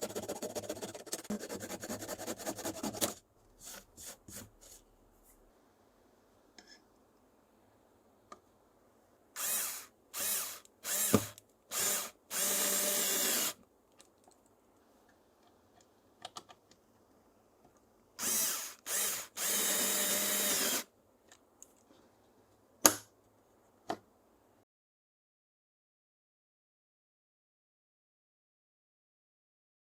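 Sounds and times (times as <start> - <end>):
power drill driving screws: 9.4 - 13.6, 18.2 - 20.9.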